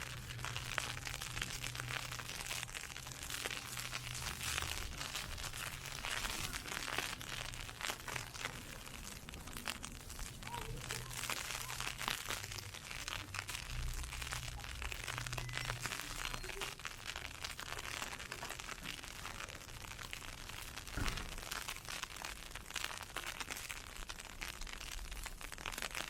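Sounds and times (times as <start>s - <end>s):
ice pellets hitting an umbrella: 0.0s - 26.0s.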